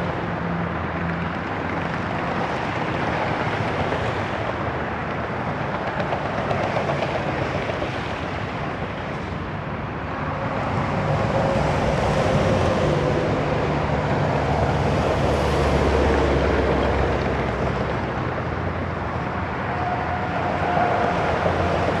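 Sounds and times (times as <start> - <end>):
heavy highway traffic: 0.0 - 22.0
faint tyre or engine whines: 10.0 - 22.0.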